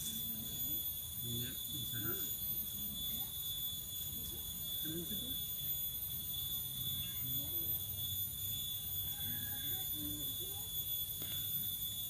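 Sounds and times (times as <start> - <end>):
high-pitched whine: 0.0 - 12.0.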